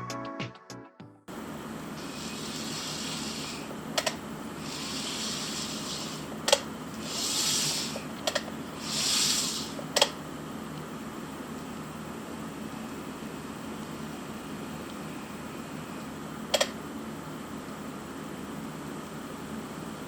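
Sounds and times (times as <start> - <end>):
sharp plastic clicks: 16.5 - 16.8.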